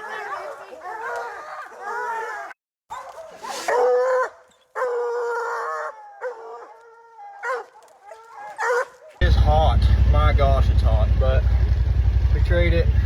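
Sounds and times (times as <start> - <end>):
dogs barking: 0.0 - 9.2
hunting dogs baying and howling: 0.0 - 9.2.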